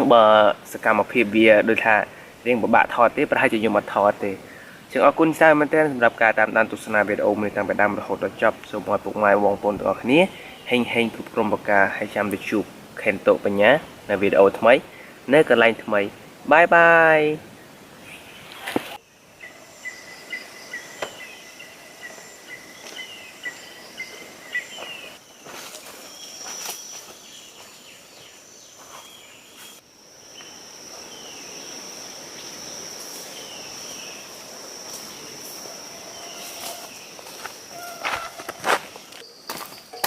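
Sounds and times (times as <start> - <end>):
bird chirps: 18.0 - 31.8
high-pitched insect drone: 19.0 - 27.2, 29.6 - 40.0.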